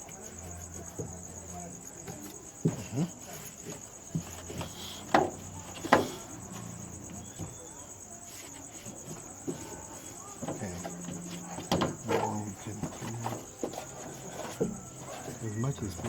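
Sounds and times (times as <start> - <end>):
cricket trill: 0.0 - 16.0
knocks and taps of handled plastic: 9.0 - 16.0.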